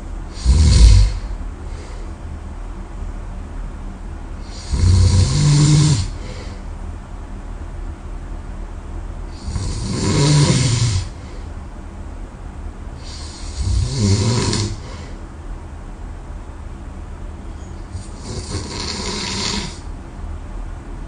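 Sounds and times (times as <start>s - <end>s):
quiet breathing: 0.0s - 2.3s, 5.8s - 6.8s, 10.4s - 11.6s, 13.0s - 15.3s
person snoring loudly: 0.3s - 1.9s, 4.4s - 6.5s, 9.4s - 11.3s, 13.0s - 15.2s, 18.0s - 19.9s.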